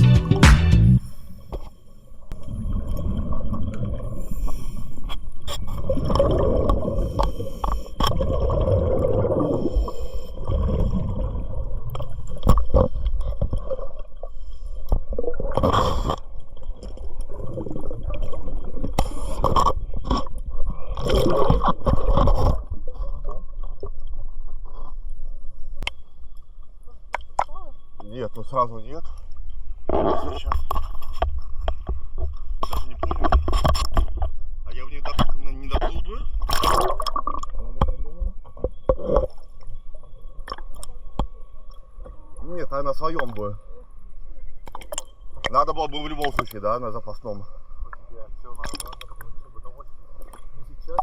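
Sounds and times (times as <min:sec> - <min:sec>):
bubbles rushing and gurgling: 0:05.6 - 0:14.2, 0:15.0 - 0:23.9.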